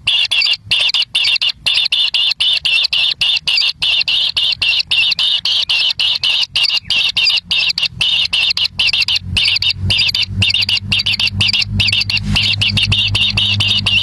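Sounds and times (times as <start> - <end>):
bird chirping rapidly: 0.0 - 14.0
low rumble: 6.8 - 14.0.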